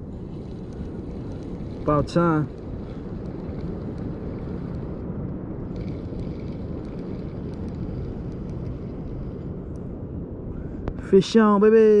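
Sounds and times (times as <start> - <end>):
wind buffeting microphone: 0.0 - 12.0
faint light ticks: 0.5 - 1.8.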